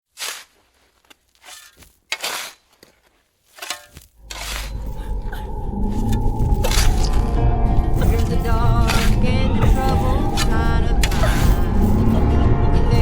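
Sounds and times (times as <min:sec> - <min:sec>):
scraping rustling noises: 0:00.0 - 0:12.2
low rumbling drone: 0:04.2 - 0:13.0.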